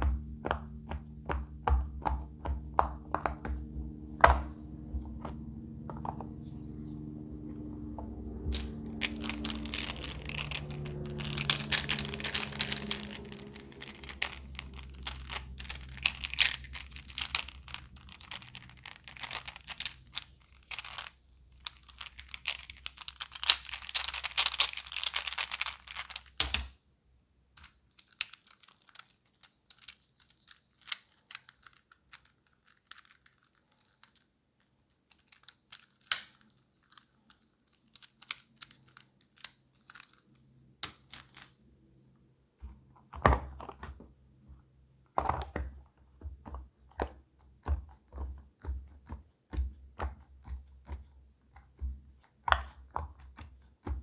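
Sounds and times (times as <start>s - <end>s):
pop-it toy bubbles popping: 0.0s - 4.5s.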